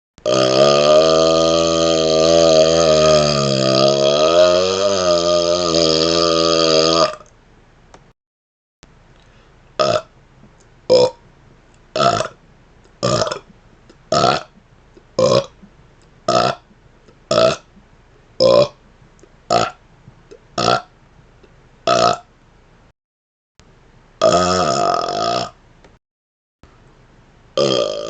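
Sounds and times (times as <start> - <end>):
man burping: 0.2 - 7.3, 9.8 - 10.1, 10.9 - 11.2, 13.0 - 13.4, 14.1 - 14.5, 15.2 - 15.6, 18.4 - 18.8, 21.9 - 22.3, 24.2 - 25.6, 27.6 - 28.0.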